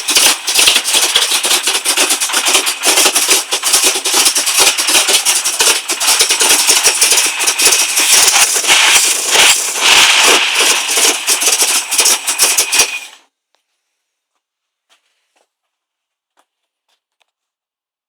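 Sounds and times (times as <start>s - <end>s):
car engine idling roughly: 0.0s - 13.1s
rattling ticks: 0.0s - 13.1s
loud hiss: 0.0s - 13.2s.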